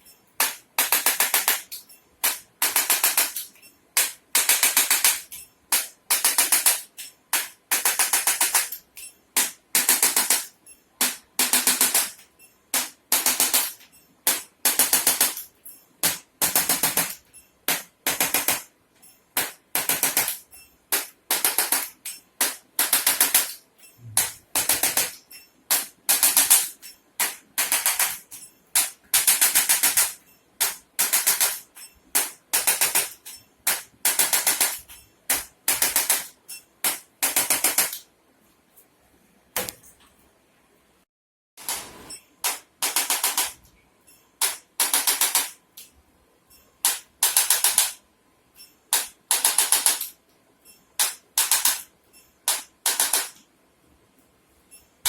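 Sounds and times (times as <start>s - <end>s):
rapid mechanical clicking: 0.3s - 38.1s, 41.6s - 43.7s, 44.4s - 45.9s, 48.6s - 50.2s, 51.0s - 53.4s.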